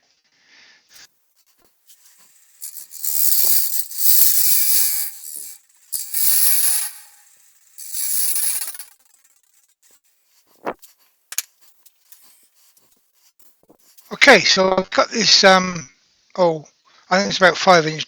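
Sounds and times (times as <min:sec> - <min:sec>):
sandpaper hissing on wood: 0:00.9 - 0:14.2.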